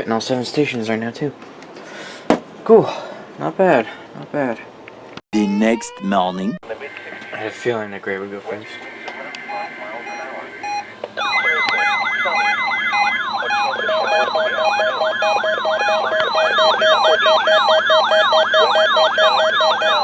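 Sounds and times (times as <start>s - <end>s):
steady alarm tone: 5.4s - 20.0s
electronic siren-like alarm sweeps: 8.5s - 20.0s.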